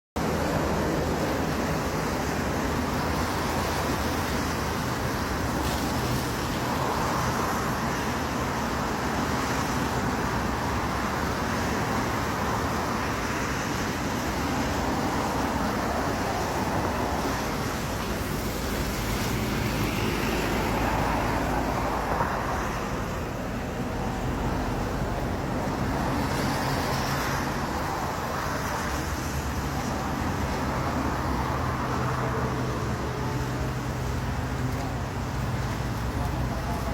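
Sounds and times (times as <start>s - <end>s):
road noise: 0.2s - 36.9s.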